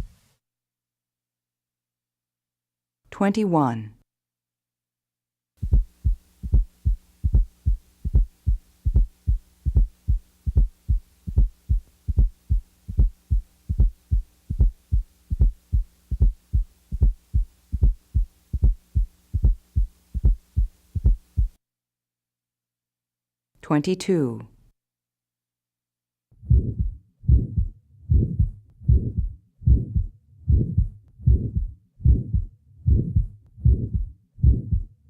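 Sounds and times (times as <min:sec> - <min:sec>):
heartbeat thuds through stethoscope: 0:05.6 - 0:21.6, 0:26.4 - 0:35.0.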